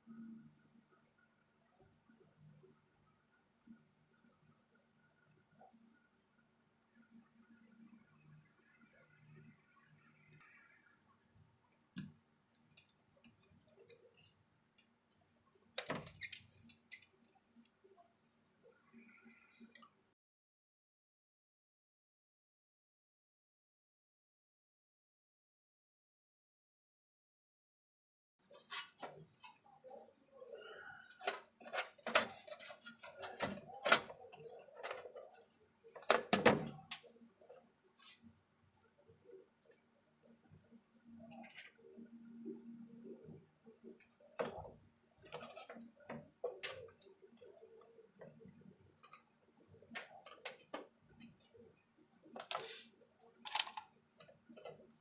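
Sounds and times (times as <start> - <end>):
small tools clicking and clinking: 52.4 - 55.0.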